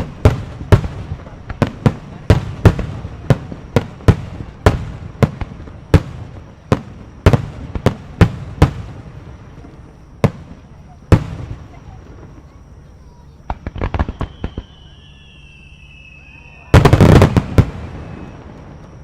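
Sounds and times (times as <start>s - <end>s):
fireworks bursting: 0.0s - 19.0s.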